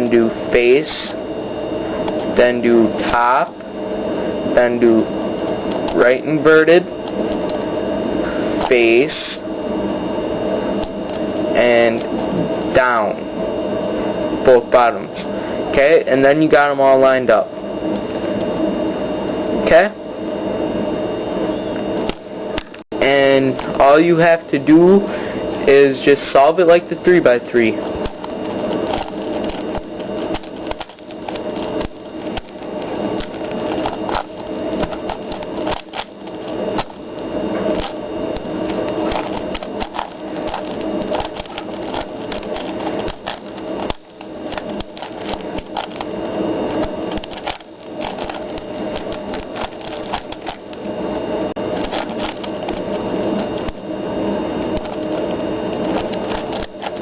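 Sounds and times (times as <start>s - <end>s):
steady hum: 0.0s - 57.0s
puzzle cube clicking and sliding: 46.7s - 50.6s.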